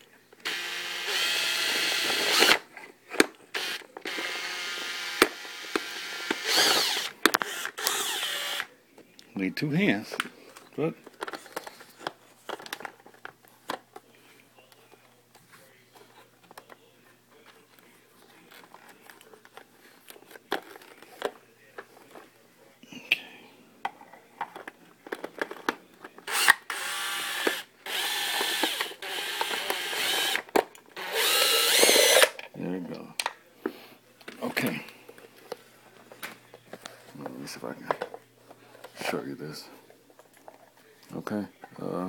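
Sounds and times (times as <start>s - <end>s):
power drill whirring: 0.4s - 2.6s, 3.5s - 8.7s, 26.3s - 32.4s.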